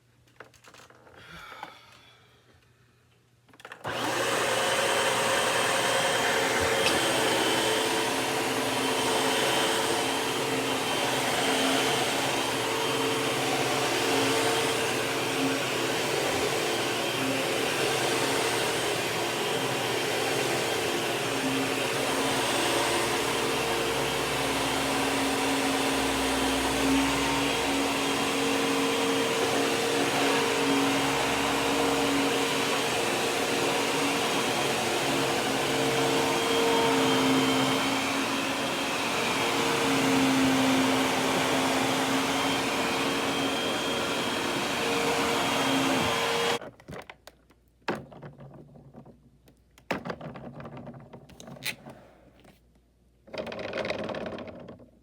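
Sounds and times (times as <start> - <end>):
vacuum cleaner motor whining: 3.8 - 46.6.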